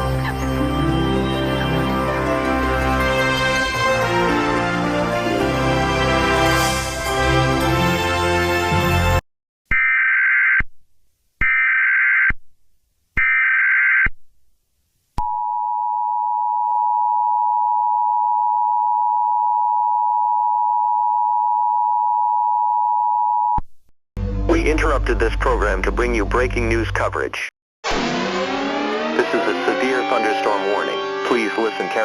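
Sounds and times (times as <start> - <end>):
two-tone attention signal: 28.6 - 32.0.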